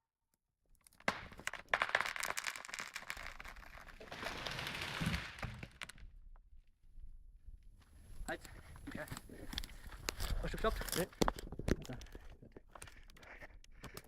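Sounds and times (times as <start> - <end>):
wood cracking: 0.7 - 6.3, 8.9 - 14.0
branches crashing: 1.1 - 5.9.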